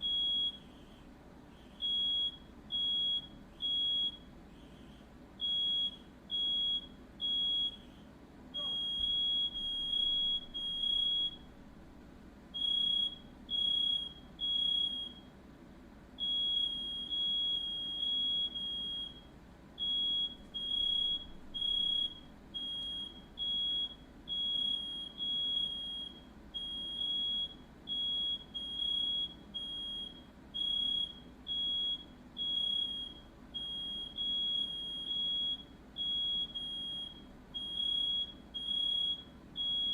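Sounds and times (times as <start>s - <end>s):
smoke alarm beeping: 0.0s - 8.0s, 8.6s - 11.6s, 12.5s - 15.3s, 16.2s - 39.9s.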